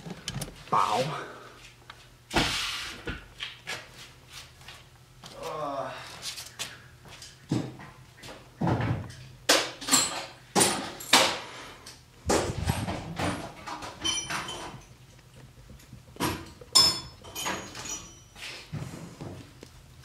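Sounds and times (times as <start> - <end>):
objects knocking and clattering: 12.3 - 18.2
ringing metallic clinks: 16.8 - 18.4.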